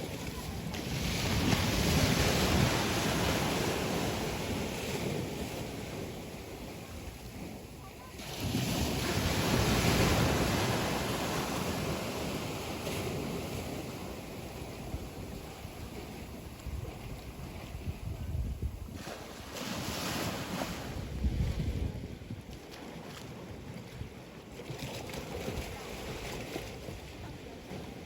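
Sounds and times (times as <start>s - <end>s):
sea waves breaking on shore: 0.0s - 28.0s.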